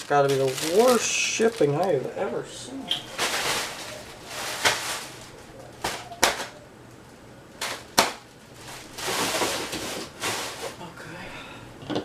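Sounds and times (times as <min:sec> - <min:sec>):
cardboard rustling: 0:00.0 - 0:02.3, 0:02.9 - 0:06.6, 0:07.6 - 0:10.8.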